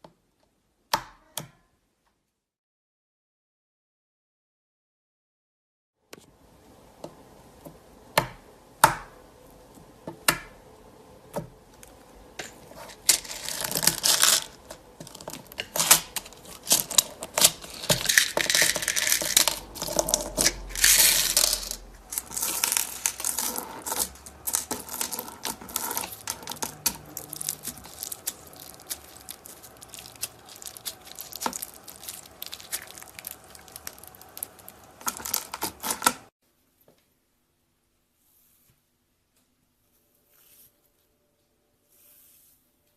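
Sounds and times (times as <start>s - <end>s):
slime popping and crackling: 13.0s - 36.3s.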